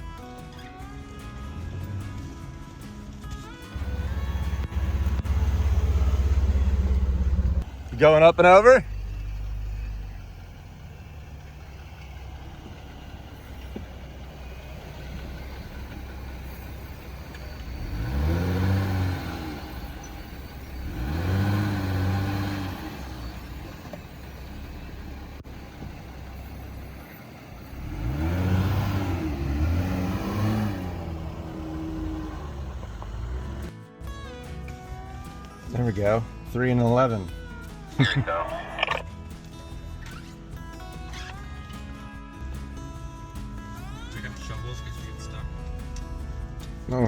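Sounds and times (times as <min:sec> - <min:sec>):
off-road vehicle engine revving: 0:01.2 - 0:33.8, 0:36.8 - 0:41.6.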